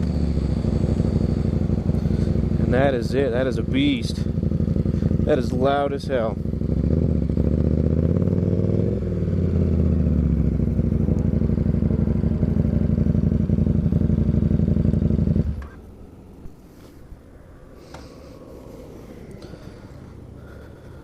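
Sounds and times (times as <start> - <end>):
motorcycle engine running loud: 0.0 - 15.8.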